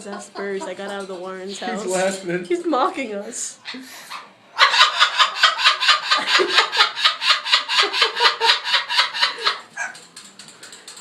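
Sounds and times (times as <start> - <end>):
parrot imitating laughter: 3.6 - 10.0.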